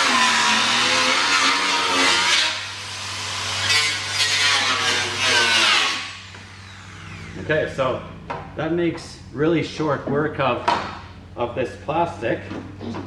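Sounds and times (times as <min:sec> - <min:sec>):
grinder cutting plastic: 0:00.0 - 0:07.7.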